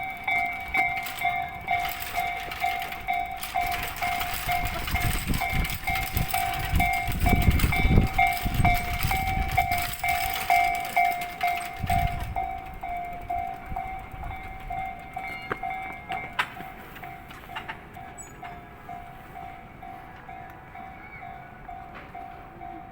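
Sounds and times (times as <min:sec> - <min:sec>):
crossing warning bell ringing: 0:00.0 - 0:22.9
train rumbling past: 0:00.0 - 0:22.9.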